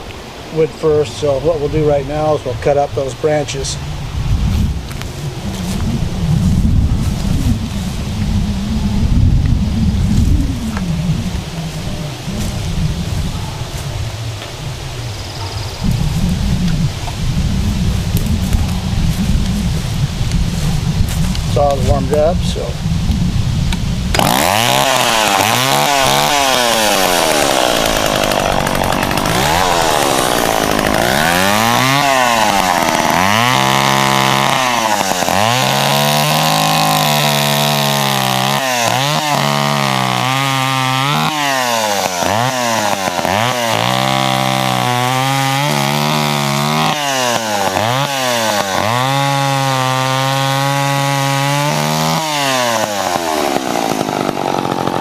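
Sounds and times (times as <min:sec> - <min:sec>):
chainsaw cutting branches: 0:09.4 - 0:14.5, 0:24.1 - 0:55.0.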